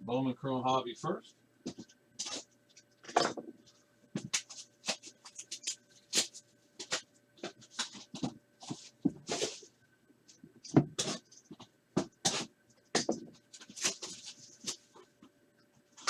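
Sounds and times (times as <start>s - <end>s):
plastic wrapping crinkling and tearing: 13.5s - 15.0s.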